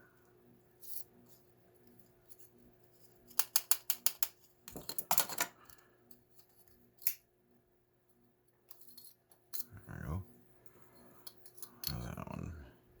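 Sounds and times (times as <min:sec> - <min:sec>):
small hard parts clicking: 0:03.3 - 0:05.8.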